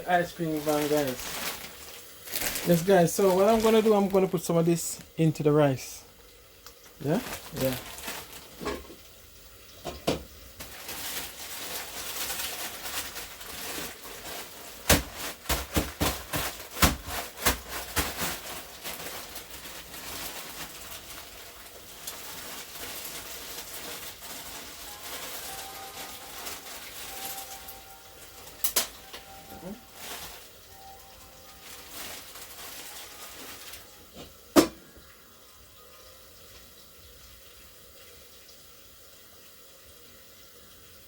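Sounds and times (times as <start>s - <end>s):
steady hiss: 0.0s - 15.5s.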